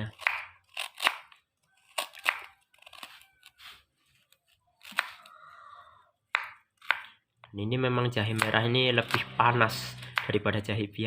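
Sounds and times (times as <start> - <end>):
knife cutting ginger root: 0.0 - 3.8, 4.8 - 5.3, 8.2 - 10.4.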